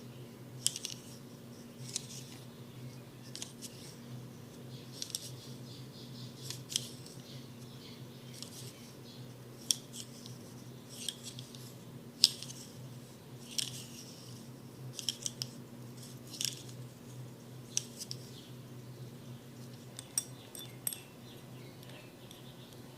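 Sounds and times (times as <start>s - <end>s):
faint low hum: 0.0s - 22.9s.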